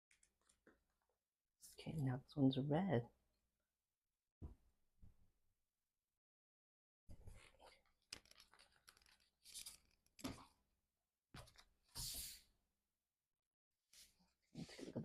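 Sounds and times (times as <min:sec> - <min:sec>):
paper pages rustling: 0:07.3 - 0:10.6, 0:11.4 - 0:11.7.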